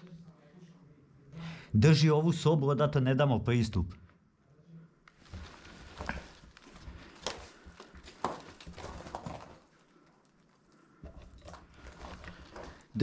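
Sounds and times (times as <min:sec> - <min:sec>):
footsteps on hard floor: 0:05.2 - 0:09.6.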